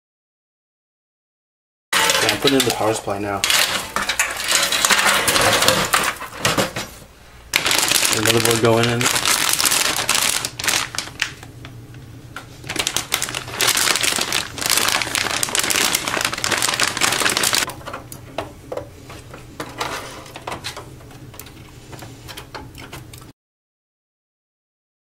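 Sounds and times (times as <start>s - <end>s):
clicking and rattling of metal parts: 19.6s - 23.3s.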